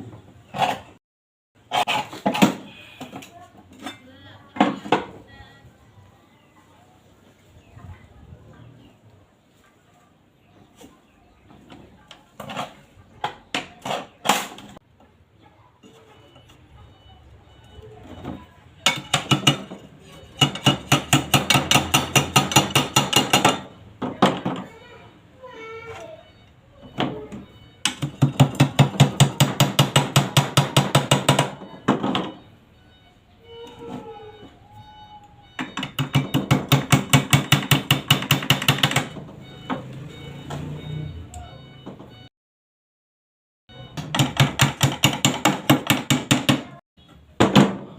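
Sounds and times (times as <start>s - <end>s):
hammer strikes: 18.8s - 24.5s, 27.8s - 32.4s, 35.6s - 39.9s, 43.7s - 46.8s.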